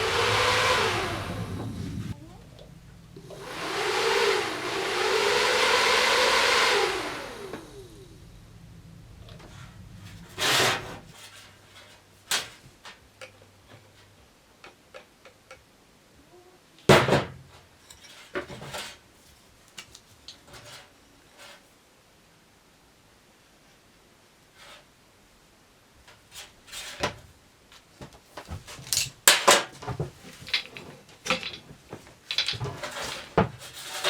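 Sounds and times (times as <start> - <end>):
cordless screwdriver motor running: 0.0 - 2.0, 3.2 - 8.2
parts knocking and clattering: 16.9 - 19.0, 28.0 - 34.0.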